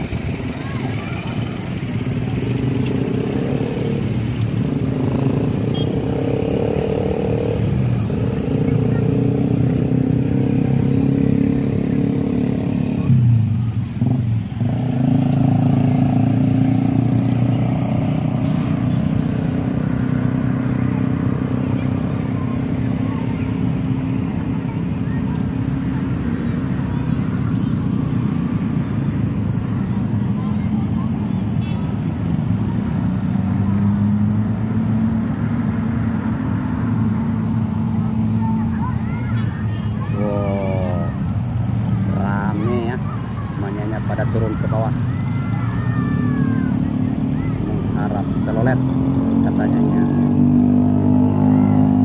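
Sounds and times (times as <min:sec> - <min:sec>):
bus diesel engine drone: 0:00.0 - 0:52.0.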